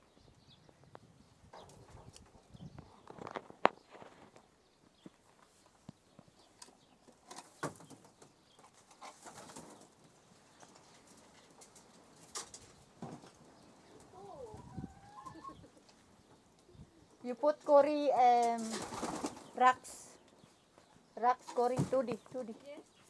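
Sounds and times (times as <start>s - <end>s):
pigeon calls: 13.8s - 15.9s
pigeon wing flaps: 18.6s - 19.5s.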